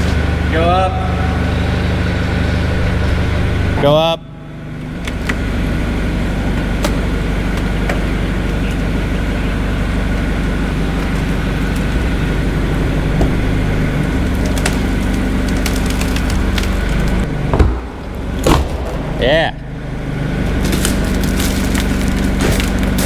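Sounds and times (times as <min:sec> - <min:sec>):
engine running steadily: 0:00.0 - 0:23.0
sharp knocks and cracks: 0:13.1 - 0:19.2, 0:20.5 - 0:23.0.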